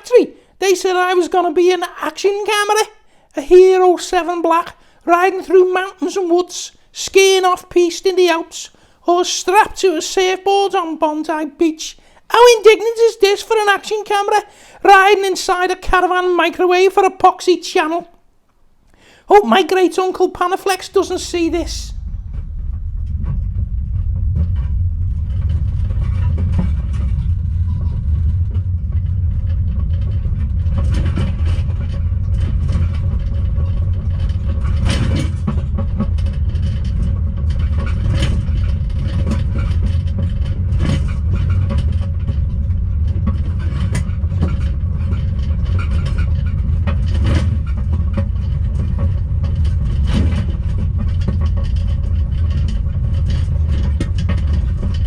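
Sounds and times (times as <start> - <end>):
knocks and rattles: 0.0 - 55.0
low road rumble: 20.2 - 55.0.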